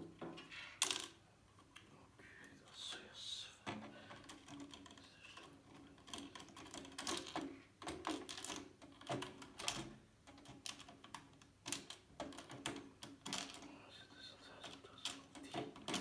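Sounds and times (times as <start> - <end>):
computer parts clicking and tapping: 3.8 - 13.7, 14.6 - 16.0.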